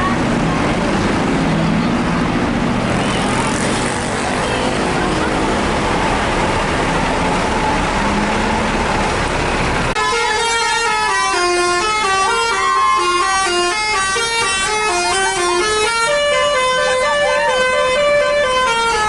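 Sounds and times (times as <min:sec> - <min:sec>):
road and engine noise: 0:00.0 - 0:19.0
bus musical horn melody: 0:09.9 - 0:19.0.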